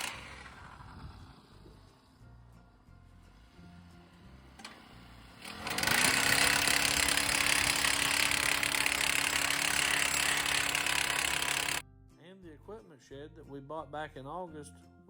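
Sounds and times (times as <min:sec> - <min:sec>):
motor-driven machine running: 0:00.0 - 0:02.0, 0:04.6 - 0:11.8.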